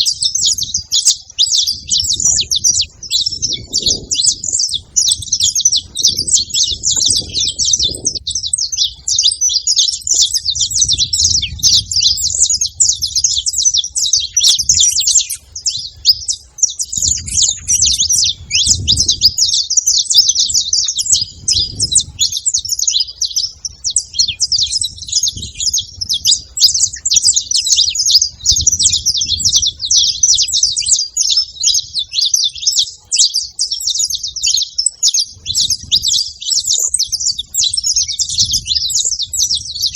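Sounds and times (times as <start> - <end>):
finches chirping and twittering: 0.0 - 39.9.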